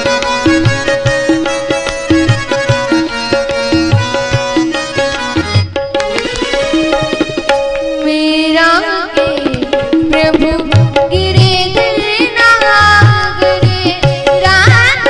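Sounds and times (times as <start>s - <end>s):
tabla: 0.0s - 15.0s
woman singing: 8.0s - 15.0s.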